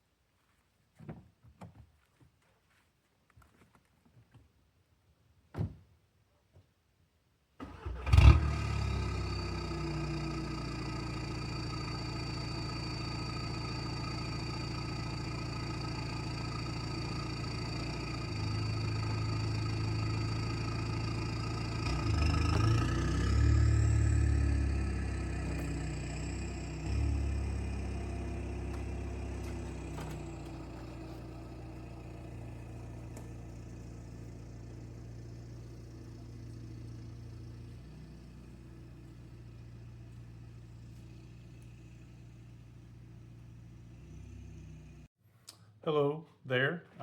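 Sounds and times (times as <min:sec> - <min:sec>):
thump: 0:05.5 - 0:05.8
diesel engine starting and idling: 0:07.6 - 0:45.1.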